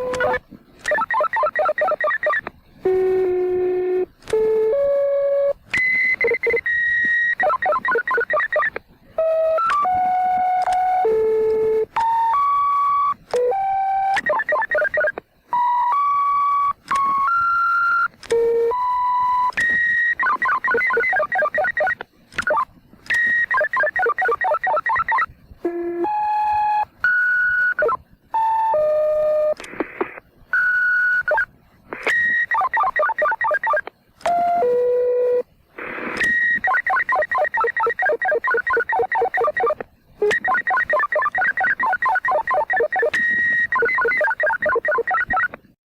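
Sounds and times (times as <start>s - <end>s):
short pager beeps: 0.0s - 2.4s, 5.8s - 8.7s, 16.9s - 25.3s, 30.6s - 35.4s, 36.2s - 45.5s
buzzy warbling tone: 35.8s - 45.5s.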